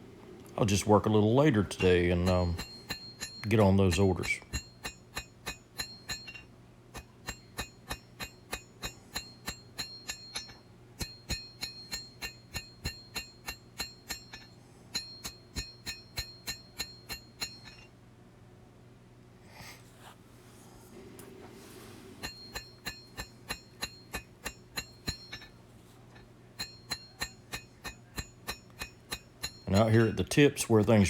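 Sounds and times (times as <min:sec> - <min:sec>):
hammer striking steel on anvil: 0:01.4 - 0:17.9, 0:22.2 - 0:25.5, 0:26.6 - 0:30.1.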